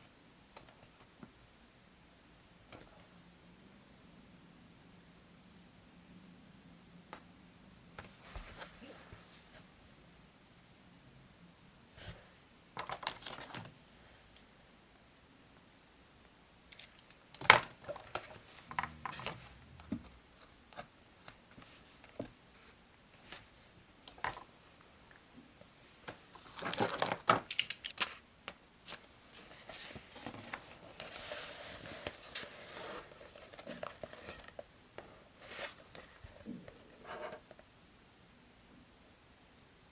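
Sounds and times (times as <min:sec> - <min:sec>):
paper rustling and crinkling: 0:26.1 - 0:28.2, 0:28.8 - 0:34.6.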